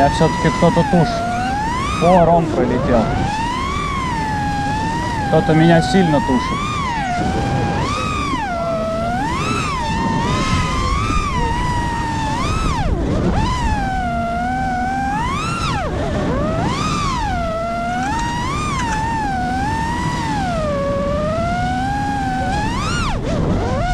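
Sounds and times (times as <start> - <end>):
quadcopter motors whining: 0.0 - 23.9.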